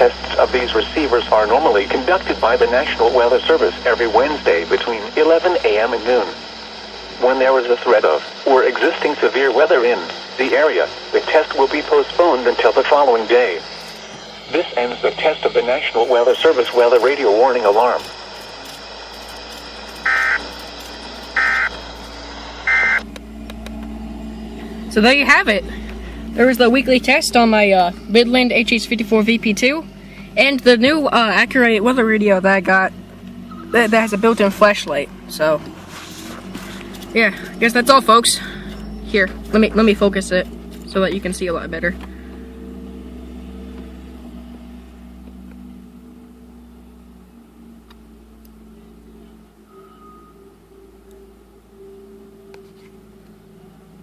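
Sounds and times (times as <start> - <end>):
digital data tone bursts: 0.0 - 23.1, 32.8 - 35.6
low mechanical hum: 0.0 - 54.0.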